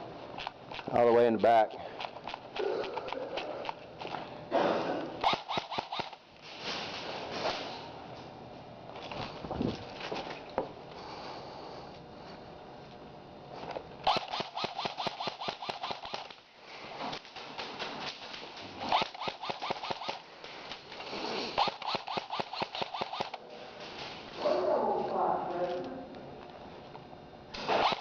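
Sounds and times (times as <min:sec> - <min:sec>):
airsoft guns firing bursts: 0:05.2 - 0:06.2, 0:14.1 - 0:16.4, 0:17.3 - 0:20.6, 0:21.6 - 0:23.4, 0:27.6 - 0:28.0.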